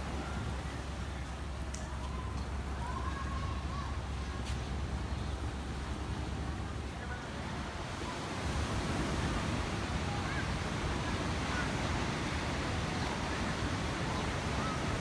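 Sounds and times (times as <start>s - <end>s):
ocean surf on beach: 7.7s - 15.0s.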